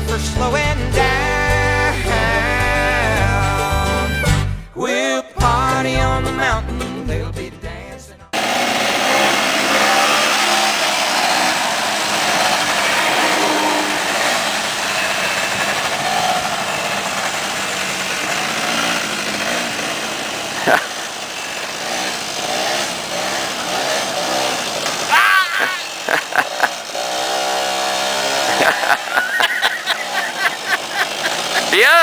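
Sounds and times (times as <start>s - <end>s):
motorcycle engine revving: 8.4s - 32.0s.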